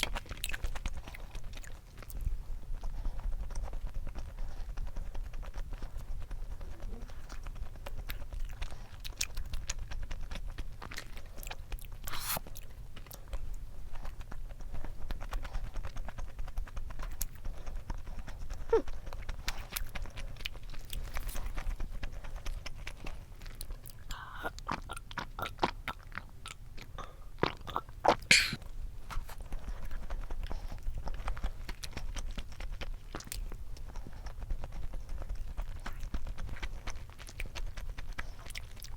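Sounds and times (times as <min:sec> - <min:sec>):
chewing and crunching food: 0:00.0 - 0:38.9
mouth clicks: 0:27.6 - 0:28.6.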